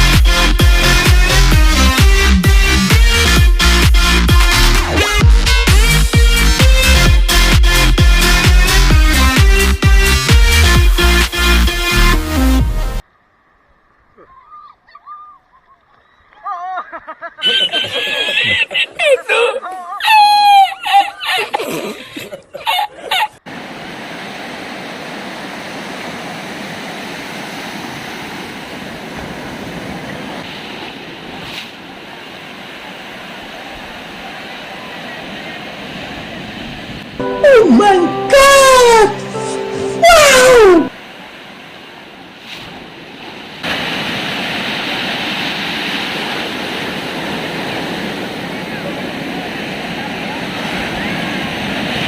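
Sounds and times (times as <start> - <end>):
ocean surf washing: 23.4 - 52.0.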